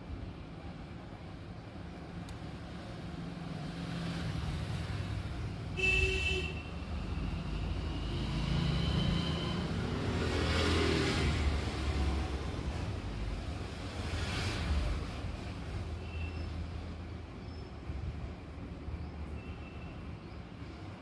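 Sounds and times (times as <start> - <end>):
road traffic rumbling past: 0.0 - 21.0
short vehicle horn toot: 5.8 - 6.7.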